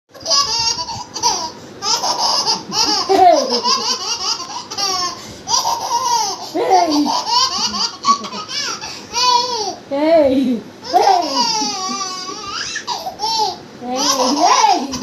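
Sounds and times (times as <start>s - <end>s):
baby laughing: 0.1s - 9.8s, 10.8s - 15.0s.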